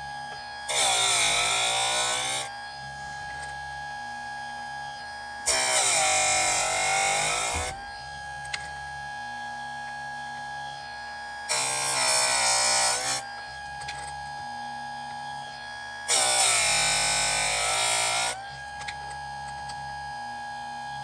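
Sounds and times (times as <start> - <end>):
sharpener motor whining: 0.0 - 21.0
grinding wheel on chain tooth: 0.7 - 2.5, 5.5 - 8.7.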